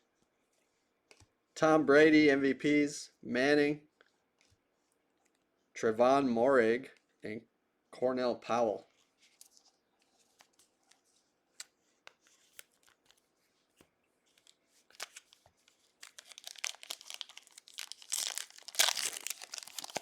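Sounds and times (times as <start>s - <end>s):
foil wrapper tearing: 16.0s - 20.0s.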